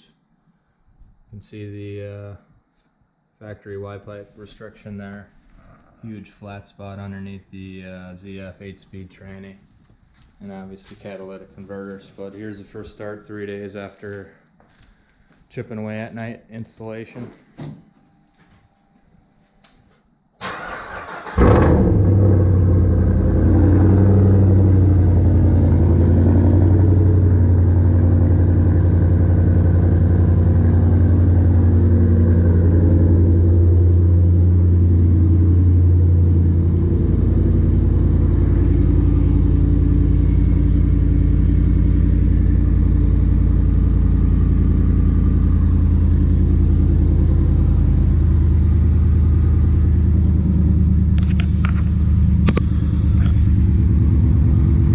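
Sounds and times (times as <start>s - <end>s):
truck engine starting and idling: 20.4s - 54.9s.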